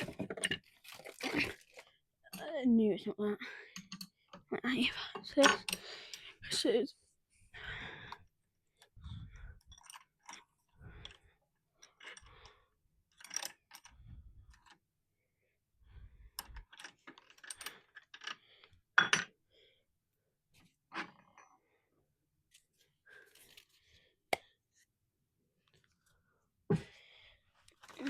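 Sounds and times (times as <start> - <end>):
tools and parts rattling: 0.0 - 2.6, 9.6 - 14.8, 16.4 - 19.3.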